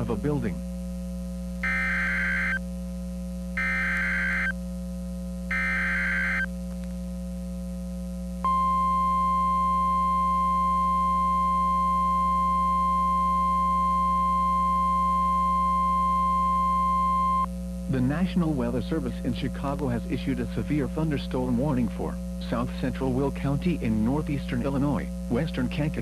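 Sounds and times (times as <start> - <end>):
low electrical hum: 0.0 - 26.0
steady warning alarm tone: 1.6 - 2.6, 3.6 - 4.6, 5.5 - 6.5, 8.5 - 17.5.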